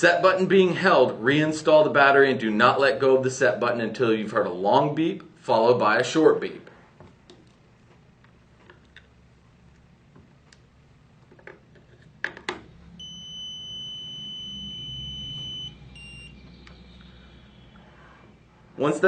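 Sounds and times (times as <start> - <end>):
keypad lock beeping: 13.0 - 16.8.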